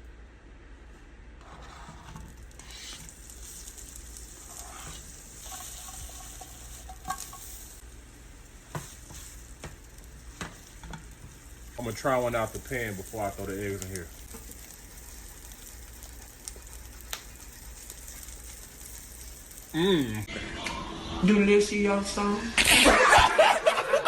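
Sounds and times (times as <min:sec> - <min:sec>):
sausages sizzling in a pan: 0:01.8 - 0:20.3.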